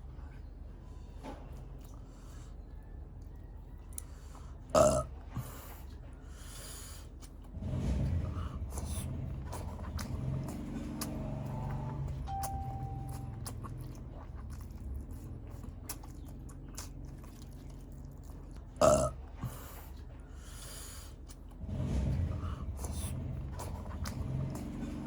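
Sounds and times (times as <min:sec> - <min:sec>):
loud burp: 0:04.8 - 0:05.1, 0:18.8 - 0:19.2
low hum: 0:08.7 - 0:18.1.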